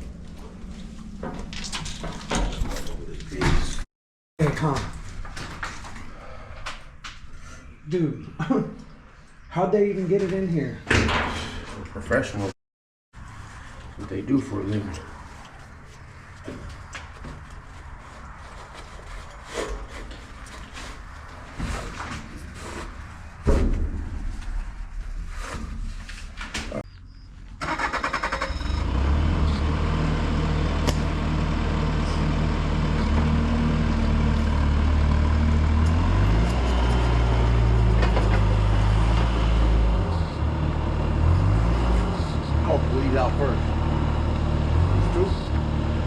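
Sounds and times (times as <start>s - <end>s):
engine cranking and running: 27.6s - 46.0s.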